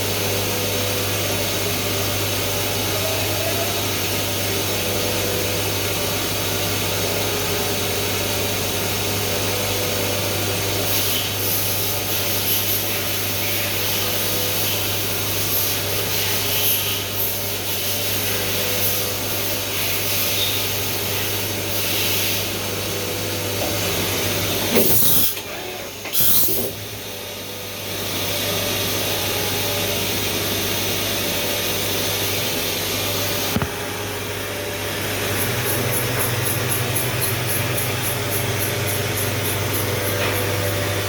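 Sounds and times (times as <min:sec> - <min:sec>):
machine hum: 0:11.4 - 0:41.0
short hissing surges: 0:26.1 - 0:26.8.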